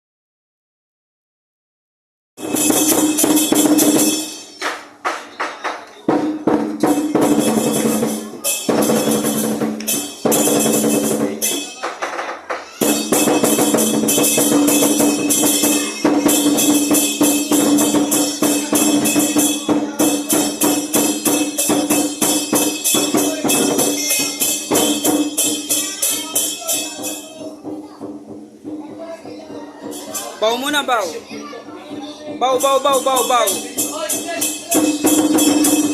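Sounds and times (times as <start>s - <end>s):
cymbals clashing: 2.4s - 31.4s, 32.3s - 35.9s
drum beating: 2.4s - 35.9s.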